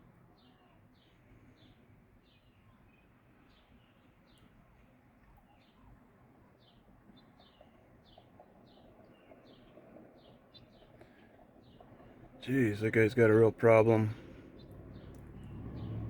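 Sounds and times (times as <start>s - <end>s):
bird chirping: 6.6s - 16.0s.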